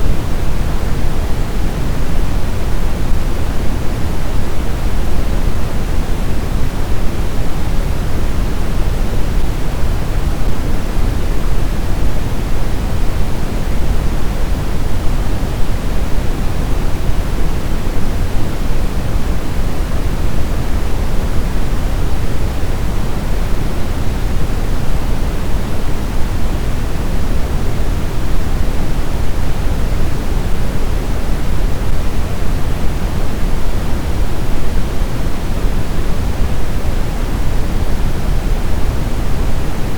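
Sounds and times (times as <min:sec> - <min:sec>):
steady rushing hiss: 0:00.0 - 0:39.9.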